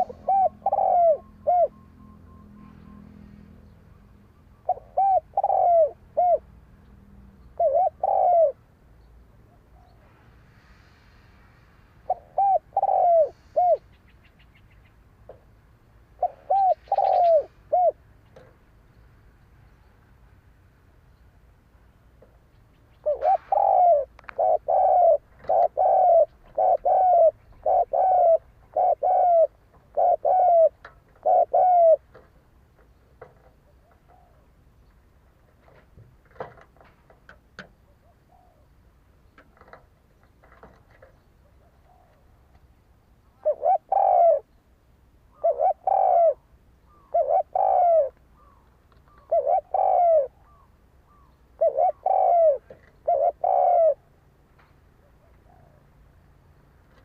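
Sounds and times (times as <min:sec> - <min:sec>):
dove cooing: 0:00.0 - 0:03.3, 0:04.6 - 0:06.6, 0:07.4 - 0:08.7, 0:12.0 - 0:14.5, 0:16.1 - 0:18.5, 0:23.0 - 0:32.3, 0:33.2 - 0:34.6, 0:37.9 - 0:38.8, 0:43.2 - 0:44.5, 0:45.3 - 0:54.2, 0:55.0 - 0:56.0.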